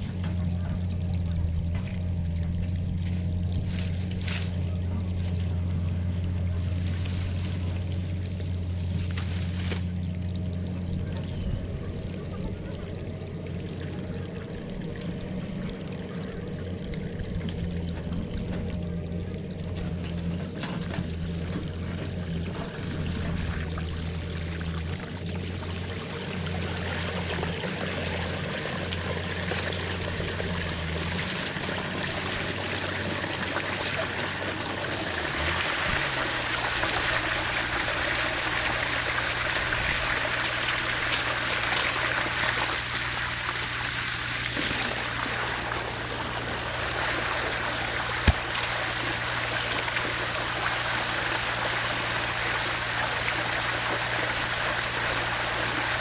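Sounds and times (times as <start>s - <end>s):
low hum: 0.0s - 32.4s
water running through culvert: 0.0s - 56.0s.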